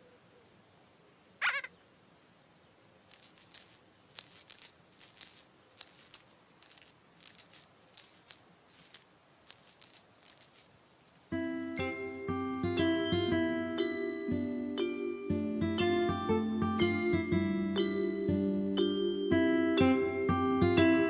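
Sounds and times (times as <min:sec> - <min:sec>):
shaker rattling: 0:03.1 - 0:11.4.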